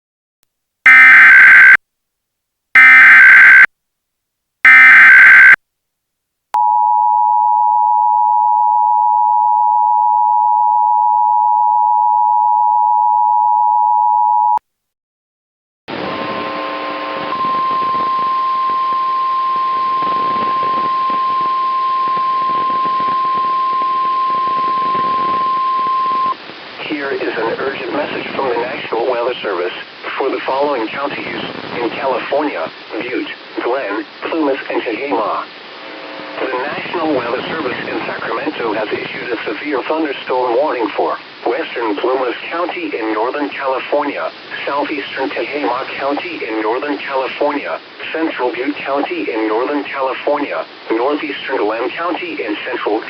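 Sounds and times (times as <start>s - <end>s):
screeching digital data bursts: 2.8s - 3.7s, 4.7s - 5.6s
static hiss: 26.3s - 53.0s.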